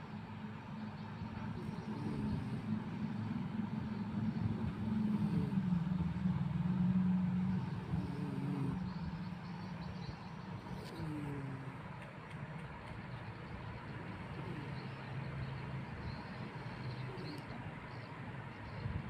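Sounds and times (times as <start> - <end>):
person snoring: 1.6 - 2.8, 4.8 - 5.8, 7.5 - 8.9, 10.6 - 11.8, 14.3 - 14.9.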